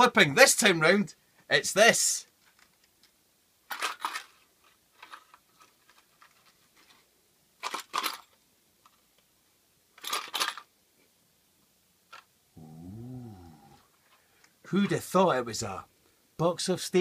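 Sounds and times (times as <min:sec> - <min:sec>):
box of staples rattling: 0:03.7 - 0:04.4, 0:07.6 - 0:08.4.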